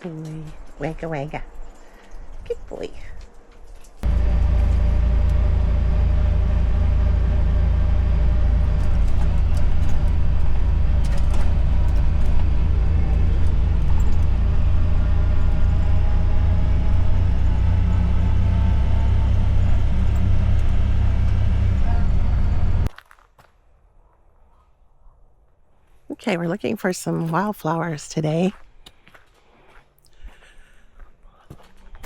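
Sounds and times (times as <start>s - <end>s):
utility vehicle engine droning: 4.0s - 22.9s
clicks and rattles: 8.5s - 16.0s.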